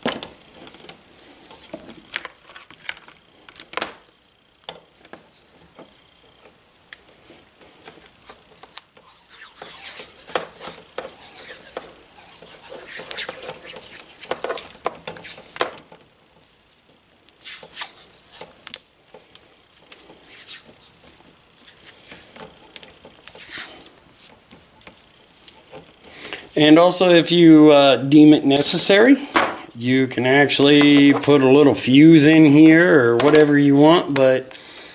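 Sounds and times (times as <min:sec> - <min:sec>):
hissy rustling: 0:00.2 - 0:27.6
scraping rubs: 0:05.2 - 0:15.6, 0:16.3 - 0:18.6, 0:19.2 - 0:26.8.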